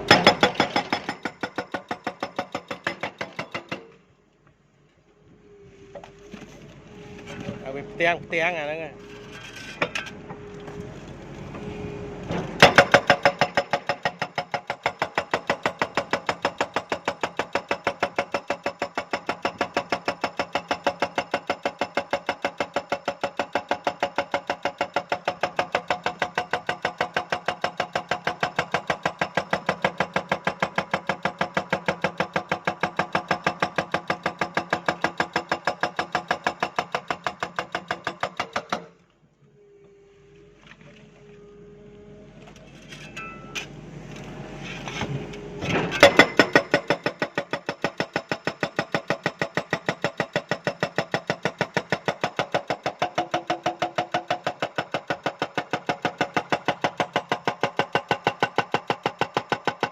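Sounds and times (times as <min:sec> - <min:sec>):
hydraulic breaker hammering rock: 0:00.0 - 0:04.0, 0:12.3 - 0:39.0, 0:45.0 - 0:59.9.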